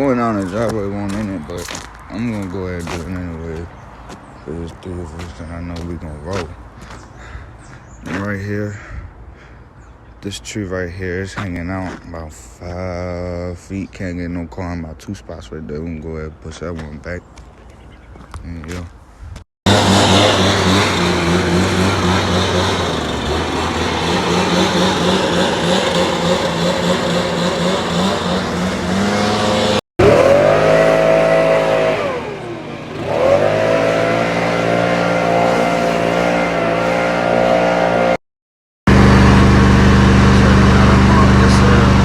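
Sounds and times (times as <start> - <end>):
engine running: 19.7 - 38.2, 38.9 - 42.0.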